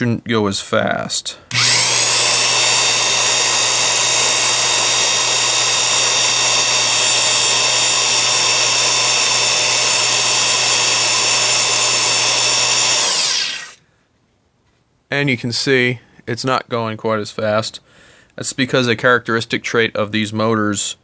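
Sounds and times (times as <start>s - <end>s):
electric drill motor whine: 1.5s - 13.8s.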